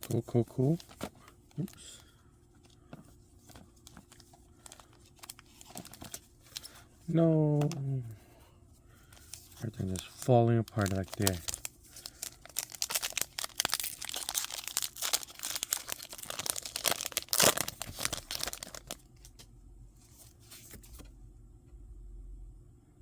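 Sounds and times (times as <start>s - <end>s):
foil wrapper tearing and crinkling: 3.8s - 6.8s, 9.6s - 19.3s.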